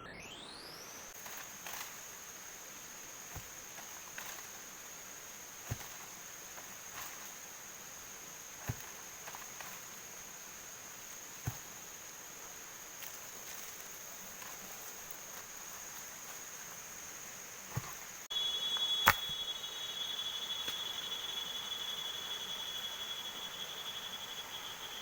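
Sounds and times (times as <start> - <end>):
lower insect trill: 0.0 - 25.0
high-pitched insect chorus: 0.1 - 25.0
sharp click: 18.8 - 19.4.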